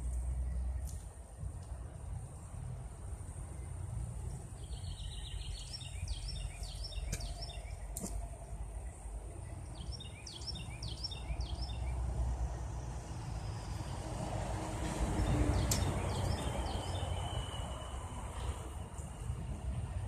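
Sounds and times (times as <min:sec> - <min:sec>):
wind rumbling on microphone: 0:00.0 - 0:20.0
bird chirping: 0:04.3 - 0:12.1, 0:15.2 - 0:18.5.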